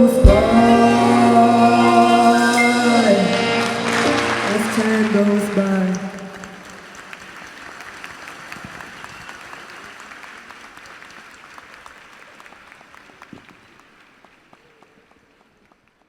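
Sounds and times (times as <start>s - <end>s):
person singing: 0.0s - 6.6s
audience applauding: 0.0s - 16.0s.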